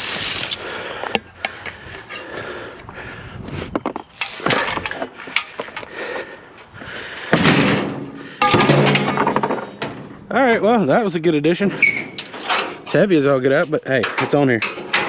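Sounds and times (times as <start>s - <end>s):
scraping or rustling: 0.0s - 0.8s, 3.9s - 5.7s
scrap metal knocks and clanks: 3.8s - 5.8s, 7.3s - 10.3s, 11.7s - 15.0s.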